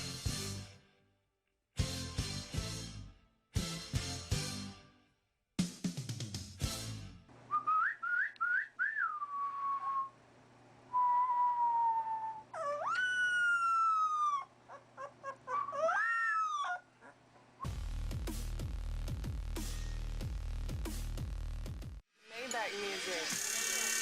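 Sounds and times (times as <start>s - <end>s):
dog whining and howling: 11.2s - 17.2s
music with heavy beat: 17.6s - 22.0s.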